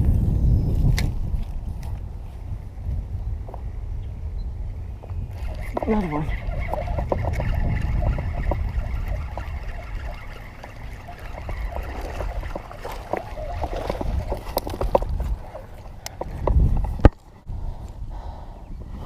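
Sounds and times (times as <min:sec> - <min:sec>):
water trickling and gurgling: 0:05.3 - 0:16.9.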